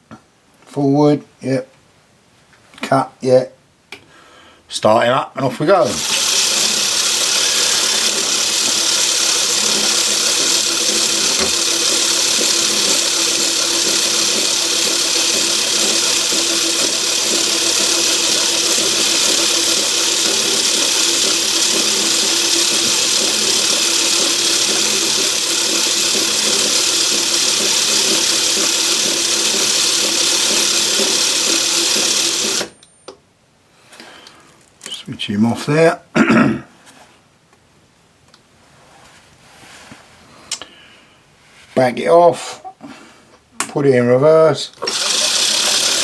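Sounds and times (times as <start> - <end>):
metal lathe whirring: 5.7 - 32.8, 44.8 - 46.0.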